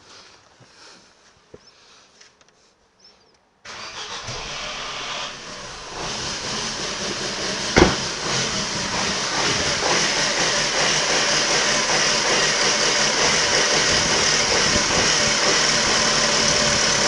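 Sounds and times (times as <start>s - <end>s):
car engine running: 3.7s - 17.0s
sharp engine knock: 6.0s - 13.8s.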